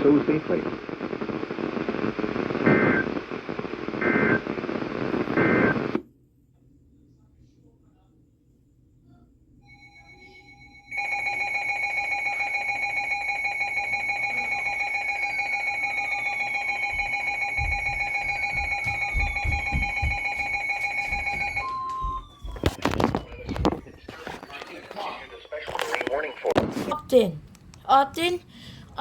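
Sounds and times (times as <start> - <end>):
loud steady alarm tone: 9.7 - 23.9.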